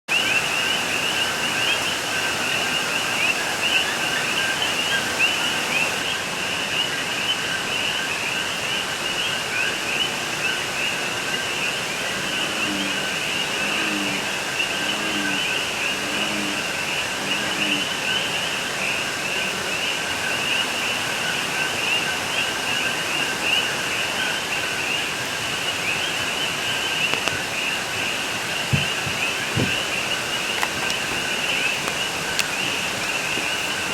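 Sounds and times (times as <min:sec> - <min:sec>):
chorus of frogs: 0:00.1 - 0:33.9.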